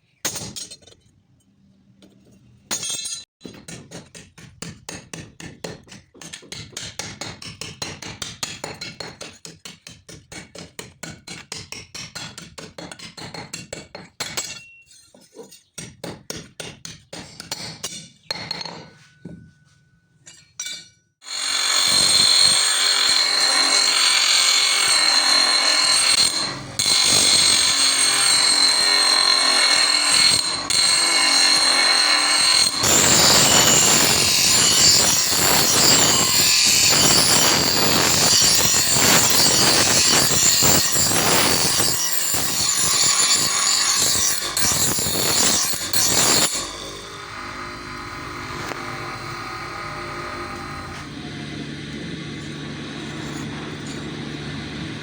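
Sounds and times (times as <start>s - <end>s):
power tool whining: 21.3s - 55.0s.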